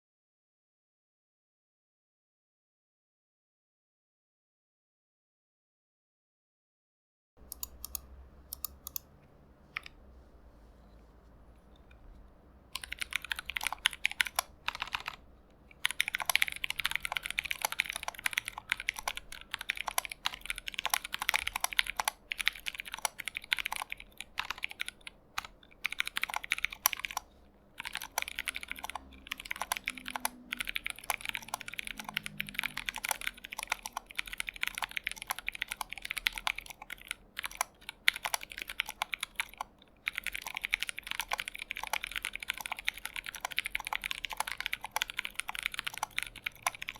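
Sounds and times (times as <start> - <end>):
mechanical keyboard typing: 7.4 - 9.1, 12.7 - 46.9.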